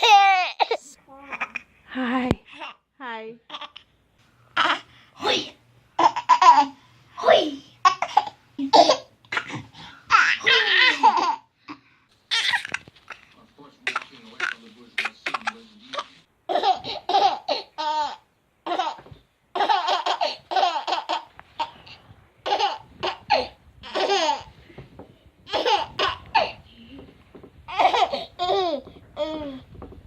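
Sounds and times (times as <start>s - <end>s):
baby laughing: 0.0s - 1.7s, 4.6s - 11.5s, 12.3s - 24.5s, 25.5s - 26.6s, 27.7s - 29.6s.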